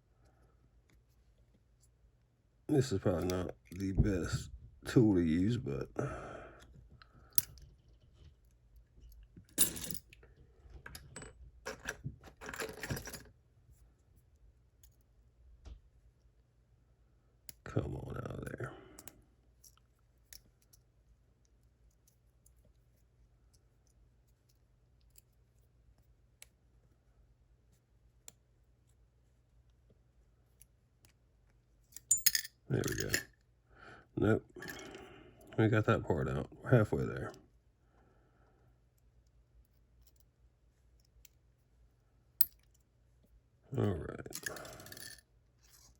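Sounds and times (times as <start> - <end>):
metal clinks: 32.0 - 33.3.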